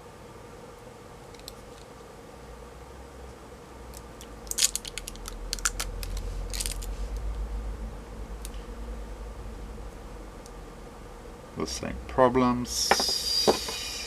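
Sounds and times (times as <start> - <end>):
low handling rumble: 5.9 - 12.7.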